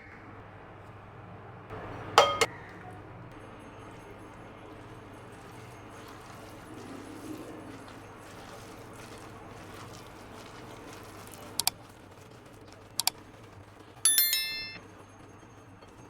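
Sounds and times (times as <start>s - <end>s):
dishes clinking together: 2.1s - 2.6s, 14.1s - 14.8s.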